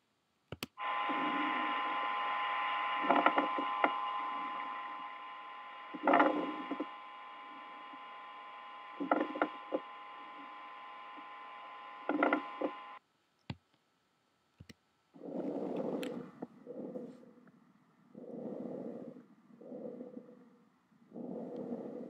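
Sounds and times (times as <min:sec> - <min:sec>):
loud noisy breath: 0:00.8 - 0:05.2
steady hum: 0:00.8 - 0:13.0.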